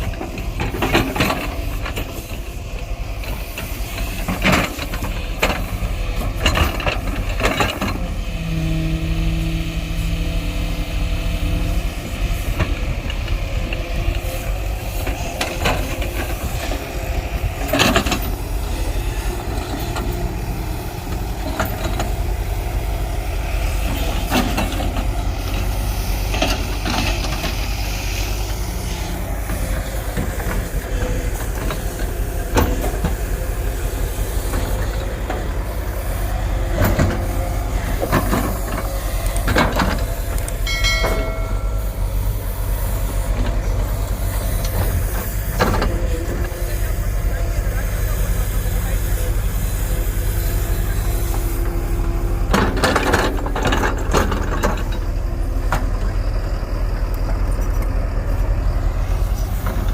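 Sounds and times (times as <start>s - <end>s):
diesel machine running: 0.0s - 59.9s
metallic clanks and knocks: 37.9s - 42.6s, 52.5s - 56.0s.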